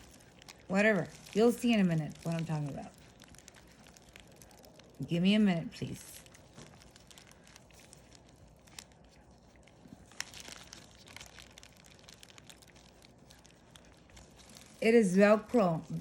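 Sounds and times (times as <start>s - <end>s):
plastic pouch crinkling: 0.0s - 16.0s.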